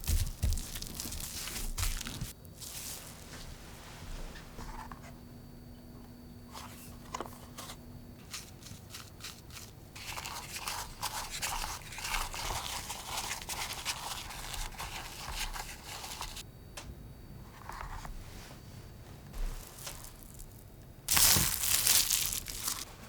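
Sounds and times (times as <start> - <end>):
utensil scraping dough in bowl: 8.2 - 16.4.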